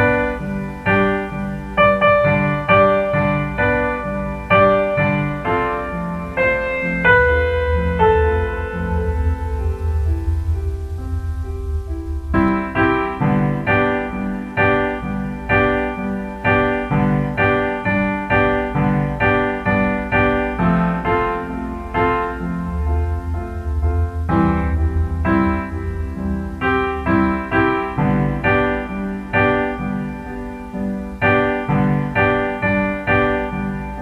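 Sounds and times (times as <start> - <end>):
piano repeating notes: 0.0 - 34.0
sustained low bass: 6.0 - 15.6, 18.7 - 32.2.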